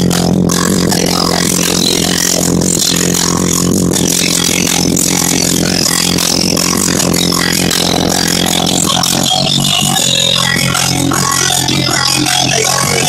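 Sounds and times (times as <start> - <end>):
subwoofers playing bass-heavy music: 0.0 - 13.0.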